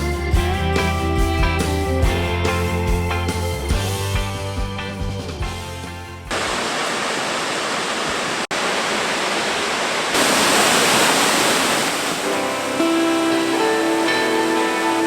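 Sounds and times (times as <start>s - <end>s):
music: 0.0s - 6.3s, 12.3s - 15.0s
waterfall roaring: 6.3s - 15.0s.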